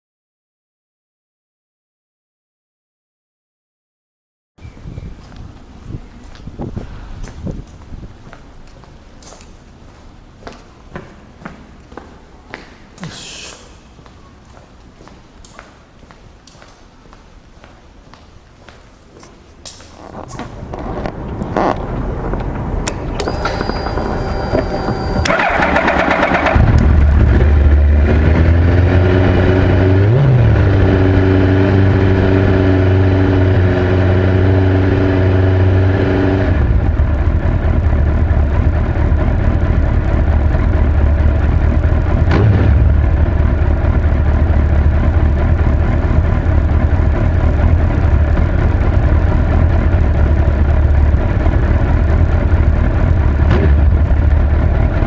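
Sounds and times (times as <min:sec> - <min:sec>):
motorcycle engine revving: 0:20.0 - 0:55.0
motorcycle starter cranking: 0:22.9 - 0:27.0
motorcycle engine idling: 0:23.3 - 0:28.2, 0:36.7 - 0:55.0.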